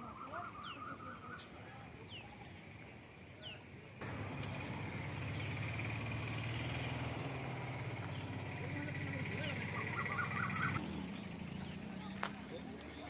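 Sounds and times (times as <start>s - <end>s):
bird chirping: 0.0s - 13.0s
low engine-like rumble: 4.0s - 13.0s.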